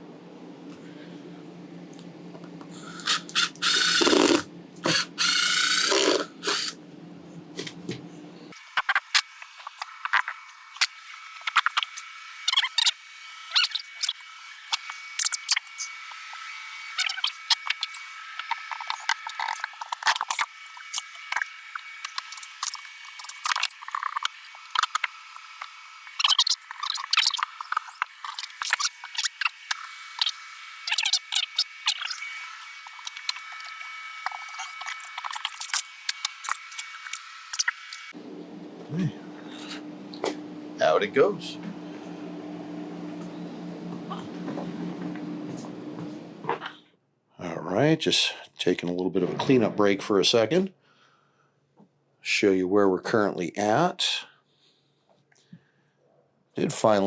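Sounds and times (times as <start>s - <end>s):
power driver running: 2.8s - 6.8s, 7.6s - 46.5s.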